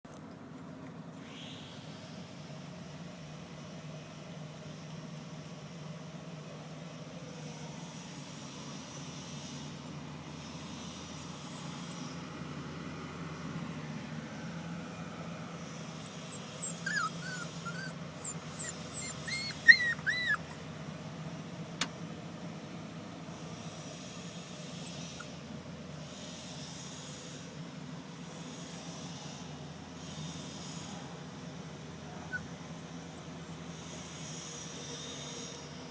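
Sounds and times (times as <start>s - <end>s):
steady low hum: 0.1s - 35.9s
puppies whimpering and yipping: 16.0s - 20.7s, 24.3s - 25.4s, 32.0s - 33.7s.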